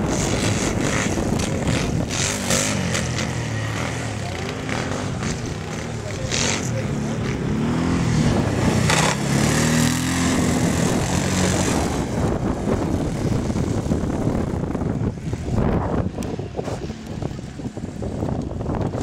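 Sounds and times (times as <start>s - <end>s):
atv engines revving: 0.0s - 19.0s.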